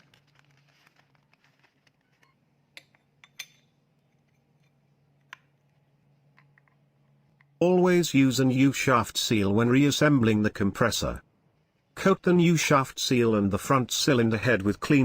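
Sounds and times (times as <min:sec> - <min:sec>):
faint steady hum: 0:00.0 - 0:15.0
metallic clinks and taps: 0:02.8 - 0:04.8.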